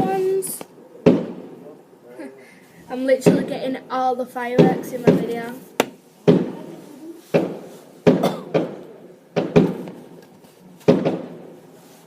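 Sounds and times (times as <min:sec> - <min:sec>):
fireworks bangs: 0:00.0 - 0:01.7, 0:03.1 - 0:03.7, 0:04.5 - 0:10.2, 0:10.8 - 0:11.7.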